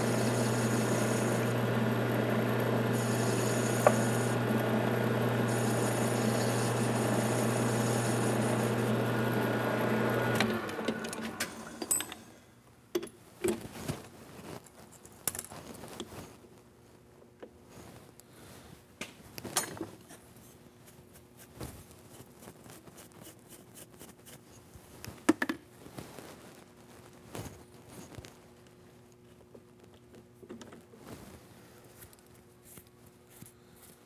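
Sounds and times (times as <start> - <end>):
metal lathe winding down: 0.0 - 12.3.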